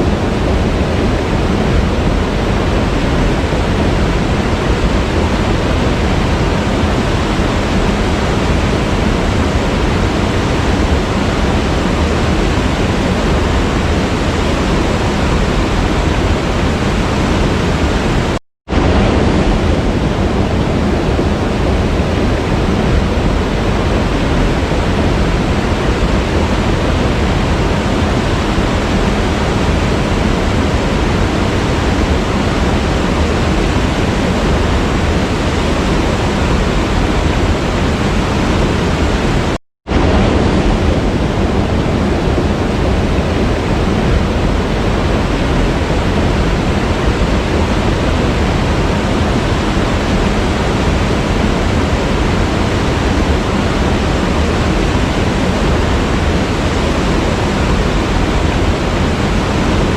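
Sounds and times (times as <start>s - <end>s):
waterfall roar: 0.0s - 59.9s.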